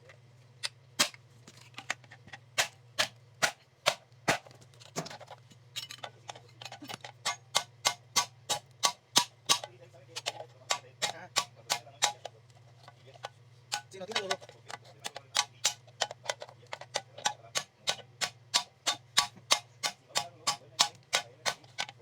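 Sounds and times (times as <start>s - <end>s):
hammer striking metal: 16.9s - 21.9s.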